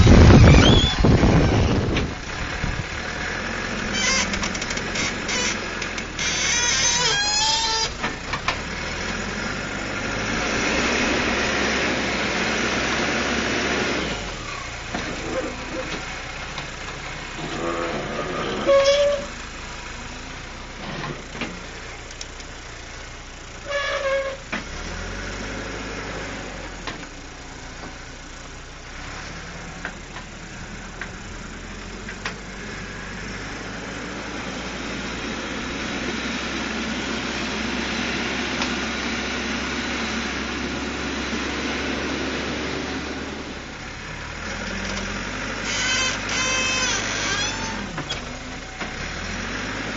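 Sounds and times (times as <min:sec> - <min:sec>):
short high tones: 0:00.0 - 0:01.8
diesel engine running: 0:00.0 - 0:49.9.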